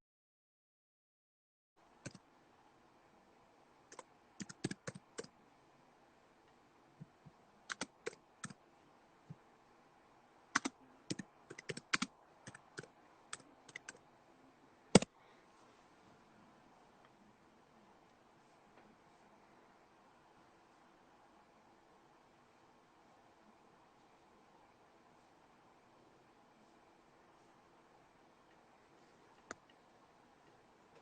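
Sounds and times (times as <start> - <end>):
clicks and taps like typing: 2.0 - 2.2, 3.9 - 5.3, 7.0 - 8.6, 10.5 - 14.0, 14.9 - 15.1, 29.4 - 29.8.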